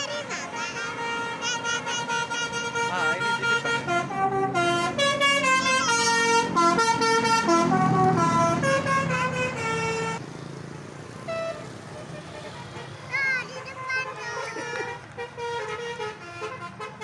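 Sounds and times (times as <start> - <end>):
musical air horn playing tune: 0.0 - 10.2, 14.8 - 17.0
bus engine running: 0.0 - 17.0.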